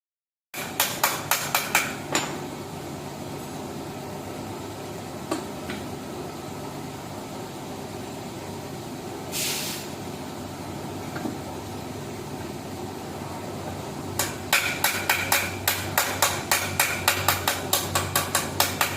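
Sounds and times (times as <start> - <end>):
short hiss: 9.3 - 9.9.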